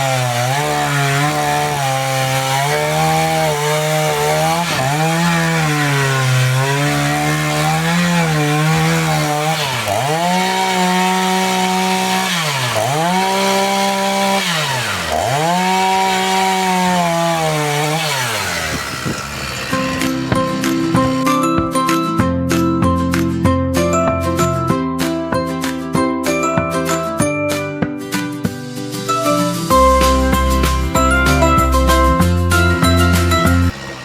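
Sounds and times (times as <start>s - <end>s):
chainsaw cutting logs: 0.0s - 21.4s, 29.7s - 34.0s.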